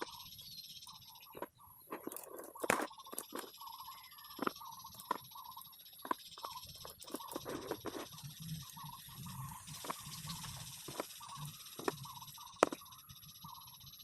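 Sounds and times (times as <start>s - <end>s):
birds chirping: 0.0s - 14.0s
magnetic balls clicking together: 0.8s - 13.6s
steady hiss: 7.4s - 12.6s.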